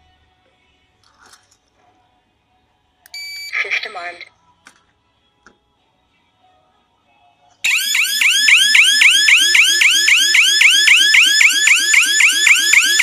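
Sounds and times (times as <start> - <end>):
burglar alarm siren warbling: 7.7 - 13.0.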